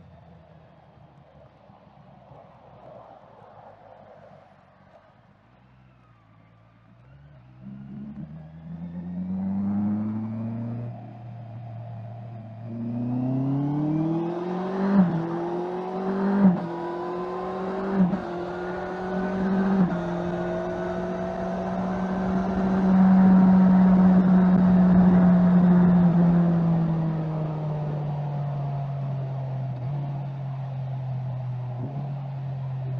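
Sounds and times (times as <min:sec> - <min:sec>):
motorcycle engine accelerating: 0:07.3 - 0:32.9.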